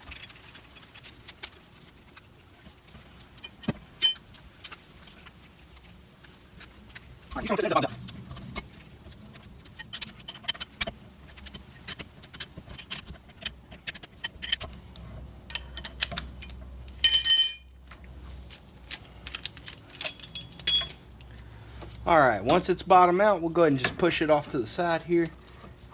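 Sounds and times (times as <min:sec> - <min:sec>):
loud ringing metal clink: 0:16.4 - 0:18.0, 0:20.0 - 0:21.0.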